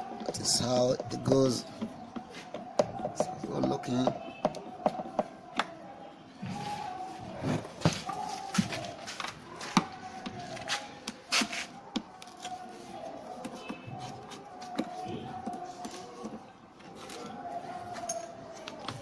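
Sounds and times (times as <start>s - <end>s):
clicks and knocks on plastic: 0.1s - 5.8s, 13.3s - 19.0s.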